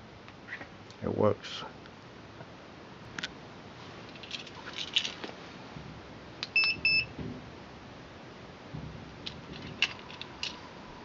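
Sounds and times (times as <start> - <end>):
alarm unit short high beeps: 6.6 - 7.1.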